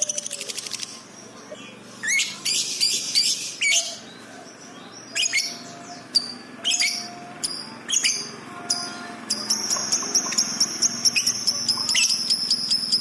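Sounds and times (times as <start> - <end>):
lovebird chirping: 0.0 - 13.0.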